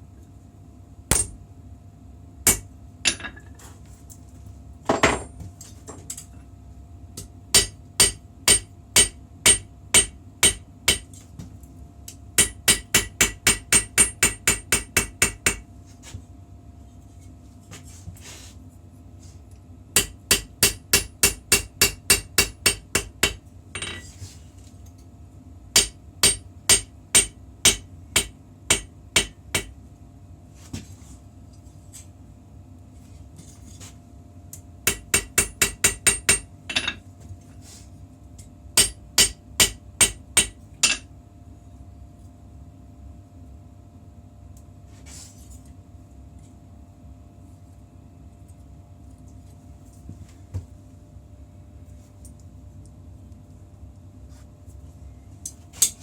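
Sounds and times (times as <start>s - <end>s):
faint steady hum: 0.0s - 56.0s
hammer striking steel: 1.1s - 1.4s, 2.5s - 3.3s, 7.6s - 11.1s, 12.4s - 15.6s, 20.0s - 23.9s, 25.8s - 29.7s, 34.9s - 37.0s, 38.8s - 41.0s.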